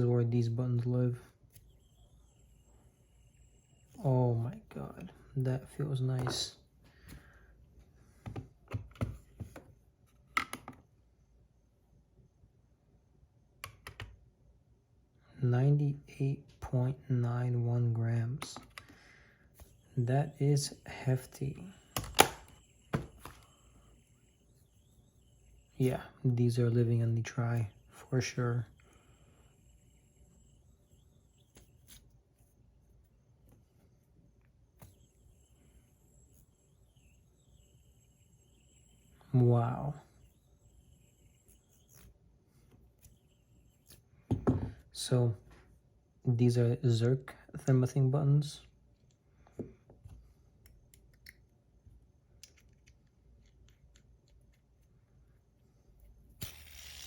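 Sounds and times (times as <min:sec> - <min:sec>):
fidget spinner clicks and taps: 0:21.8 - 0:25.8.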